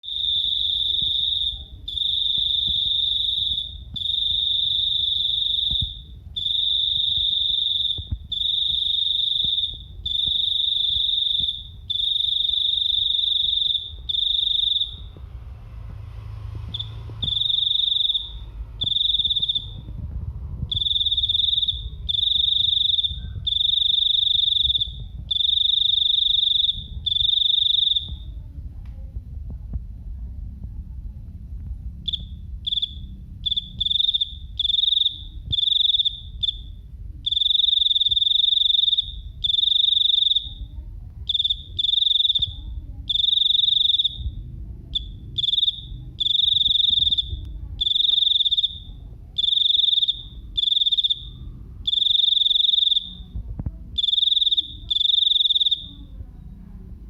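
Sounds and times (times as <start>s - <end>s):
cricket trilling: 0.0s - 15.2s, 16.6s - 19.9s, 20.6s - 28.4s, 32.0s - 53.4s, 54.0s - 56.1s
low rumble: 13.8s - 23.7s, 24.5s - 25.5s, 28.0s - 37.3s, 44.1s - 47.8s, 51.2s - 51.9s, 53.0s - 54.0s.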